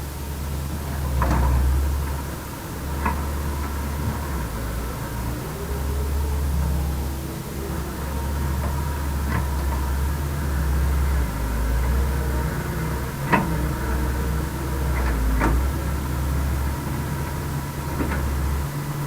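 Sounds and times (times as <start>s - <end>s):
diesel machinery droning: 0.0s - 19.0s.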